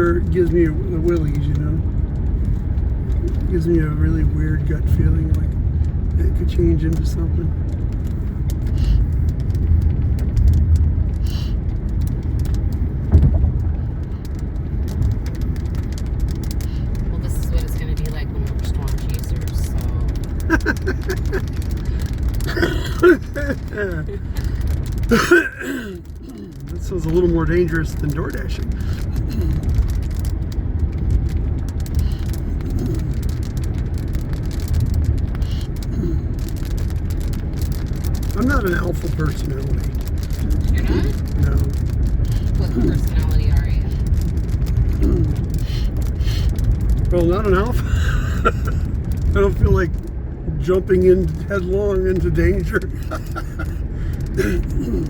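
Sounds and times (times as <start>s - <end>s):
car interior rumble: 0.0s - 55.0s
faint ticks: 6.9s - 50.2s.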